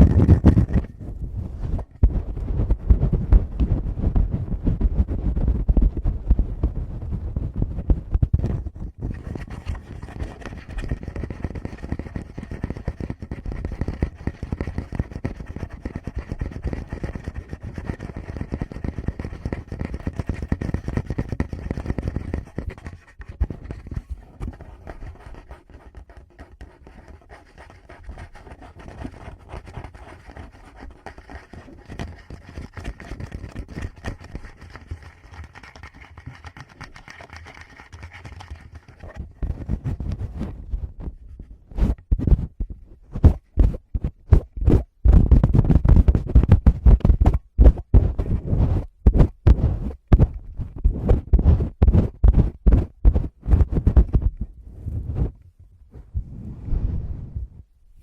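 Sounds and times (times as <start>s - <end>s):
muffled thumps: 0.0s - 9.2s, 39.1s - 57.7s
fingers scratching on microphone: 0.0s - 57.6s.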